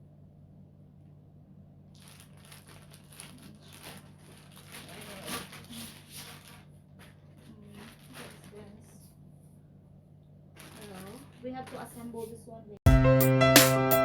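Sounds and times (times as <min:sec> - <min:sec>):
packaging rustling and crinkling: 0:01.9 - 0:09.1, 0:10.6 - 0:12.1.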